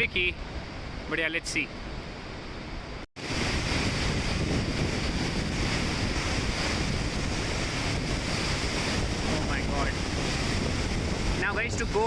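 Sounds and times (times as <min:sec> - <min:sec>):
wind buffeting microphone: 0:02.6 - 0:12.0.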